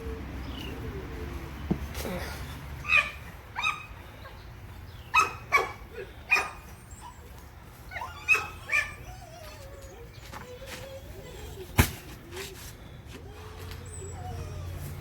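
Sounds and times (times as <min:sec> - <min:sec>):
puppies yipping and barking: 0:02.8 - 0:12.0, 0:13.2 - 0:15.0.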